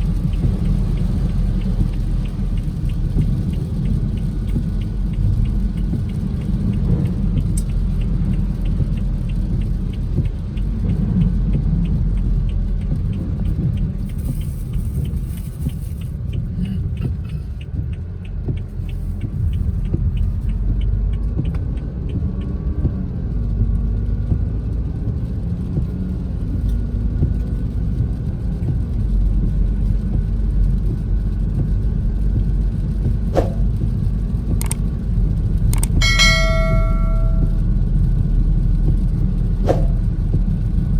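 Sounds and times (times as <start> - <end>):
light ticking: 0.0 - 23.6, 33.8 - 37.6
car interior rumble: 0.0 - 40.9.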